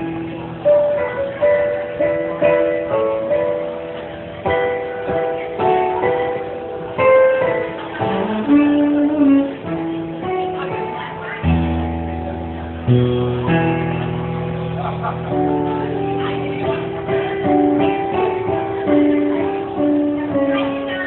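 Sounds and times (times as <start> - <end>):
electronic keyboard piano chords: 0.0 - 21.0
deep held bass notes: 6.9 - 21.0.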